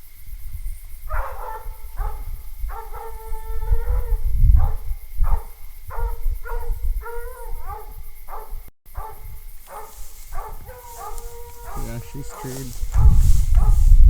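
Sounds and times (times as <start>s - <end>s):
dog barking: 1.1s - 14.0s.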